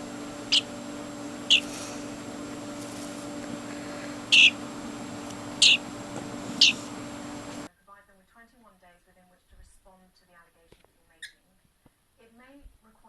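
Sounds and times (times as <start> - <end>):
steady low hum: 0.0 - 7.7
small animal chirping: 0.5 - 0.8, 1.4 - 2.0, 3.8 - 4.6, 5.6 - 5.9, 6.6 - 6.9.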